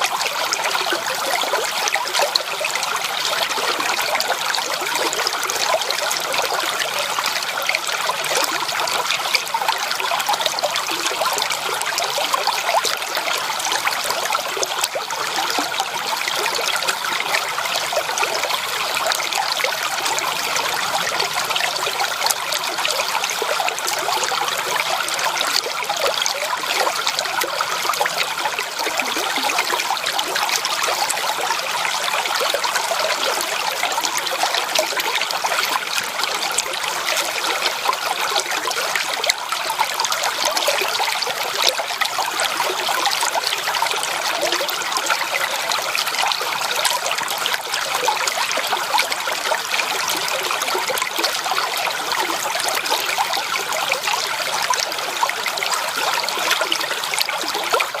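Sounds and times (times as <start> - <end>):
creek water babbling over stones: 0.0 - 58.0.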